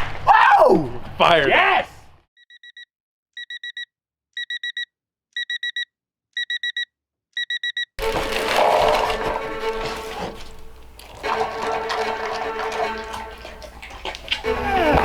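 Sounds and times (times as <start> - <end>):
alarm clock beeping: 2.4 - 7.9.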